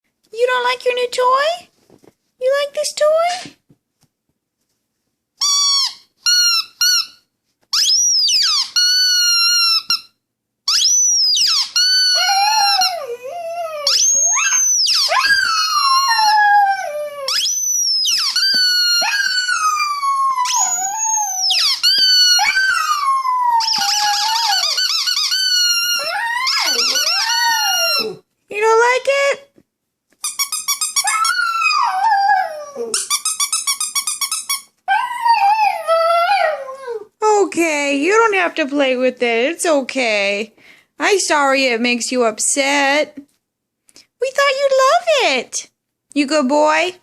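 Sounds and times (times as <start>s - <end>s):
squeaky toy squeaks: 5.4s - 13.2s, 13.8s - 16.5s, 17.3s - 28.2s, 30.2s - 31.8s, 32.8s - 34.8s
dog howling: 12.0s - 17.6s, 18.4s - 25.0s, 25.6s - 28.2s, 31.0s - 33.0s, 34.9s - 37.1s.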